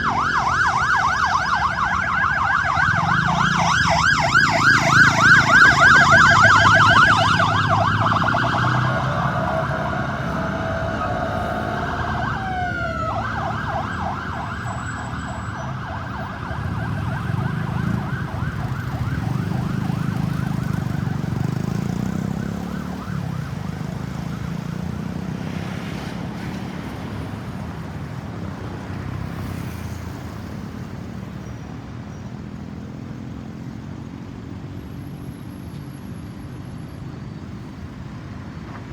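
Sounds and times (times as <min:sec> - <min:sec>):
ambulance siren yelping: 0:00.0 - 0:25.5
road traffic noise: 0:00.0 - 0:38.9.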